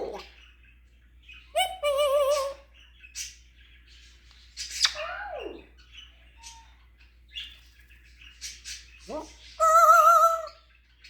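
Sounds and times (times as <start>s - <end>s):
parrot whistling and chirping: 9.1s - 10.6s.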